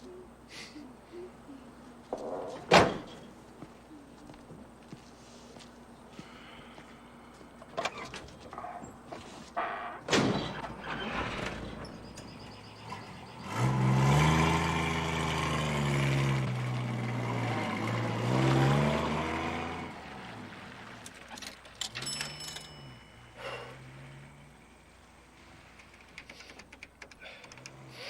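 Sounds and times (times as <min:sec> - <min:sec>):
vehicle engine accelerating: 0:12.7 - 0:21.2, 0:23.4 - 0:25.8.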